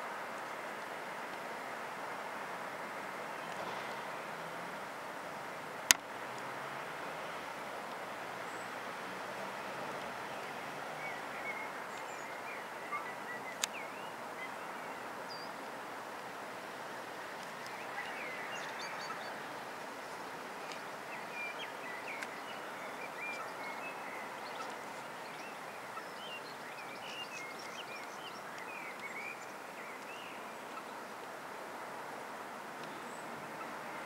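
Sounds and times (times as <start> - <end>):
outdoor background hiss: 0.0 - 34.0
small birds chirping: 7.8 - 16.4, 17.1 - 31.4.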